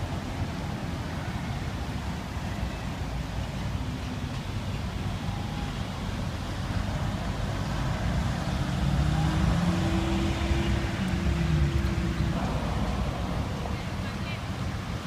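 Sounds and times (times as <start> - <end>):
traffic rush: 0.0 - 15.0
vehicle engine hum: 3.3 - 15.0.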